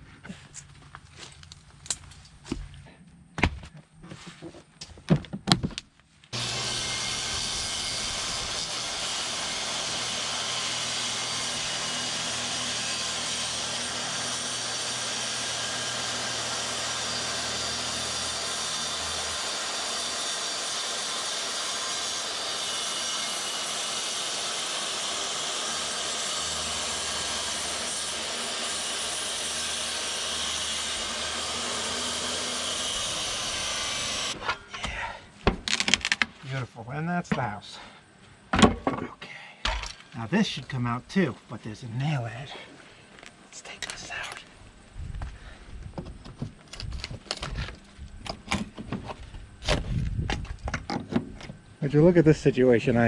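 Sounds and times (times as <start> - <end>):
deck boards hammered and pried: 38.5 - 39.1.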